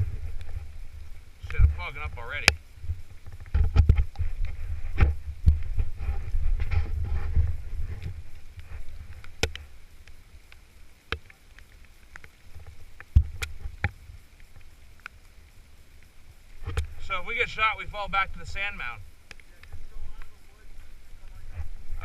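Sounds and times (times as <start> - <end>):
low rumble on microphone: 0.0 - 11.0, 16.2 - 22.0.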